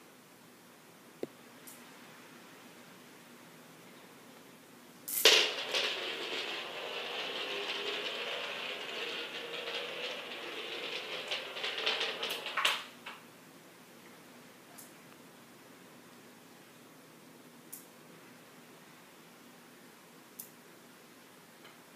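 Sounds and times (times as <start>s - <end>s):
steel ball rolling: 5.1s - 13.2s
steel balls clicking on magnets: 5.1s - 13.2s.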